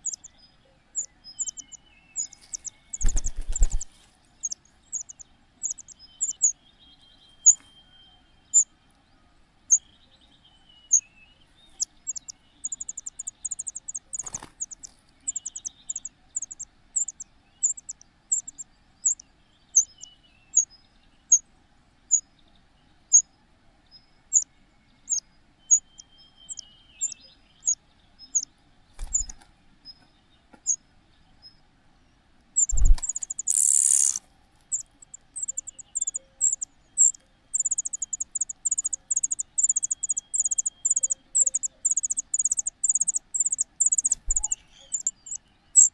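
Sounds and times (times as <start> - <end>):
small bird chirping: 0.0 - 8.7, 9.7 - 21.4, 22.1 - 23.3, 24.3 - 30.8, 32.6 - 45.9
faint low gliding bird calls: 32.6 - 45.9.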